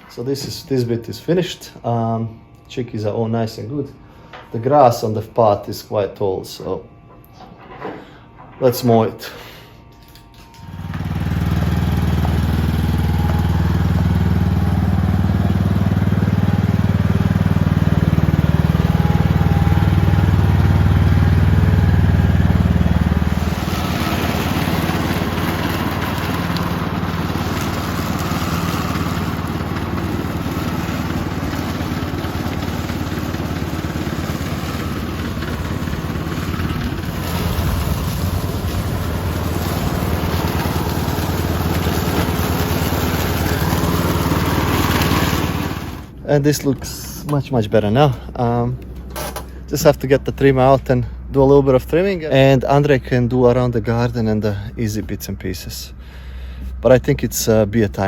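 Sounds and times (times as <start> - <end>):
lawn mower engine running: 10.1 - 47.3, 48.1 - 49.7.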